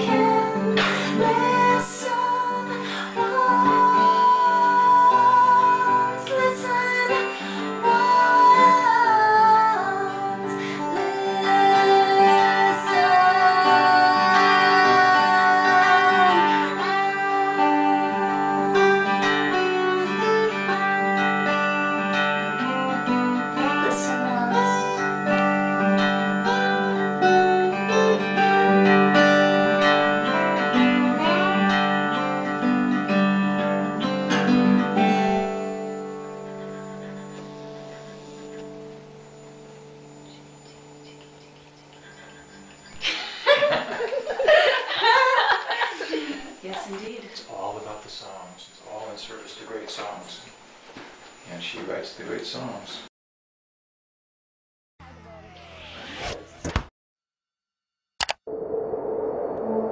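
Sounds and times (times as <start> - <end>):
slide guitar gliding notes: 0.0 - 43.1
acoustic guitar: 0.0 - 52.1.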